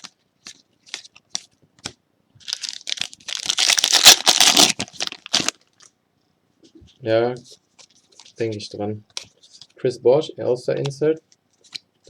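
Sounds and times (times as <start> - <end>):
foil wrapper crinkling: 2.4 - 5.9.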